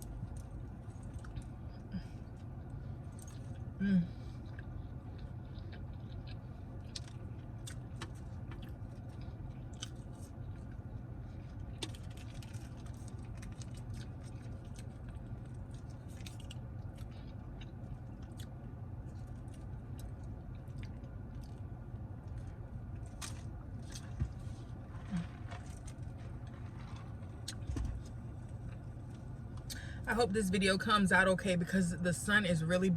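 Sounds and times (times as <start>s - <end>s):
wet chewing with crunches: 0.0s - 29.8s
steady low hum: 0.0s - 32.9s.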